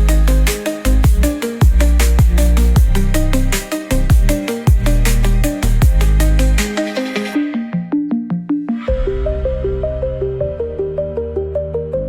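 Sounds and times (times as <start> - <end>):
fast drum beat: 0.0 - 6.4
deep falling bass notes: 0.0 - 6.6, 8.9 - 12.0
electronic music: 0.0 - 12.0.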